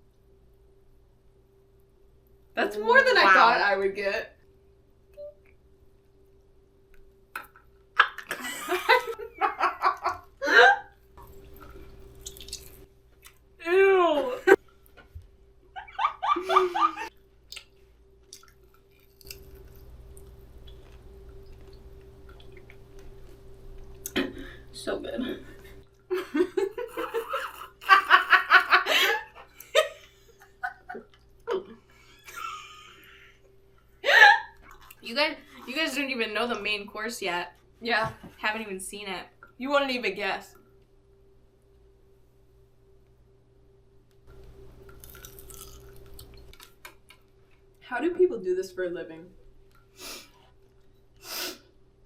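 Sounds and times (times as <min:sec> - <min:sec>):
person laughing: 0:08.0 - 0:10.9, 0:15.8 - 0:17.1, 0:26.1 - 0:33.3
people laughing: 0:15.8 - 0:17.1.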